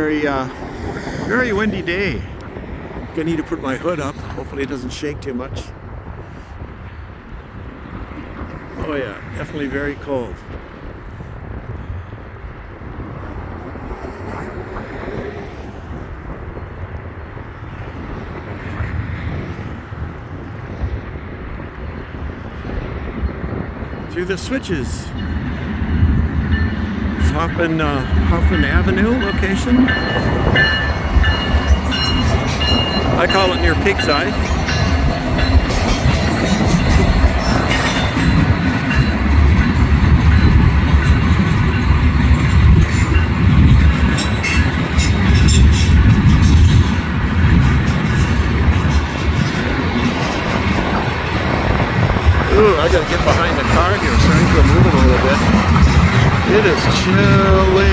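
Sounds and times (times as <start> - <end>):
wind buffeting microphone: 0.0 - 57.9
freight train rumbling over switches: 24.6 - 57.9.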